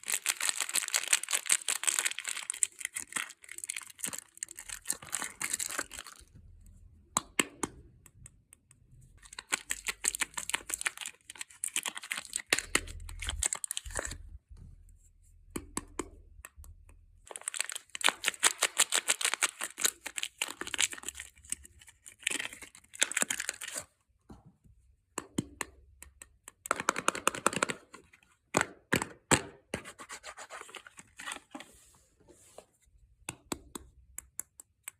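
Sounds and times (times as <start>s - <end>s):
packaging torn and crinkled: 0.0s - 6.3s, 9.2s - 14.2s, 17.3s - 23.9s.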